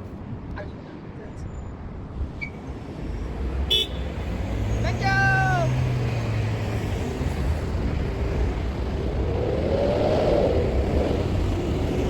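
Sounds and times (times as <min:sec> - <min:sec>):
road traffic rumble: 0:00.0 - 0:12.0
vehicle engine passing: 0:04.3 - 0:12.0.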